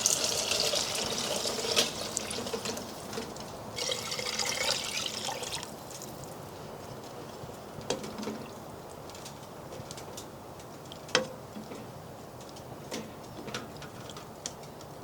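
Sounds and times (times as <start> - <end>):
liquid being poured: 0.0 - 5.7
faint steady hiss: 0.0 - 13.4.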